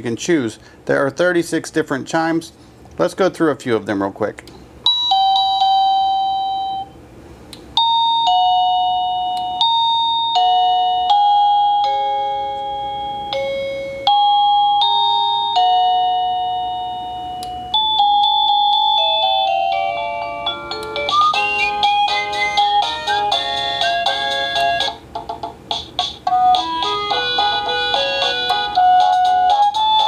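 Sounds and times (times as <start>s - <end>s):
electronic doorbell chime tunes: 4.9s - 7.0s, 7.8s - 25.0s, 26.3s - 30.0s.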